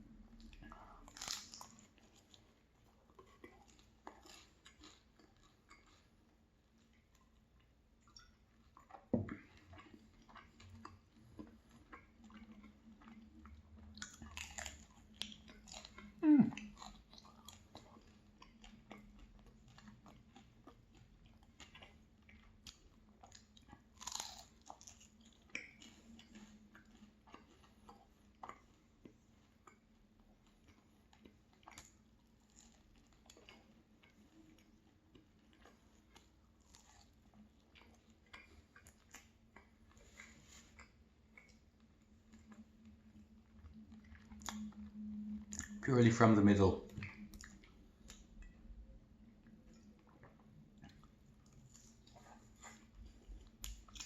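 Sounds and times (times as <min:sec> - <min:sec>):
chewing and crunching pastry: 0:00.0 - 0:54.0.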